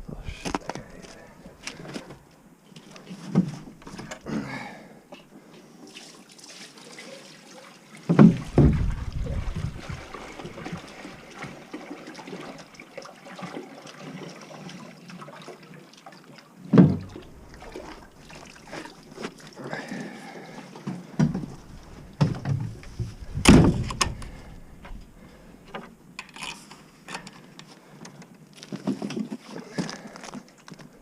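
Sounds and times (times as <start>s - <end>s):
water trickling and sloshing: 0.3s - 31.0s
heavy dull thumps: 8.2s - 10.7s, 21.2s - 25.2s.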